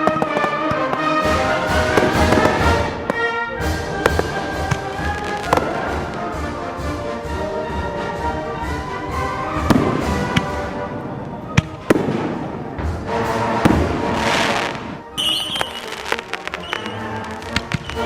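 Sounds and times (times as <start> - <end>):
fireworks bangs: 0.0 - 7.1, 8.9 - 18.0
wind band march music: 0.0 - 18.0
fireworks crackling hiss: 11.8 - 18.0.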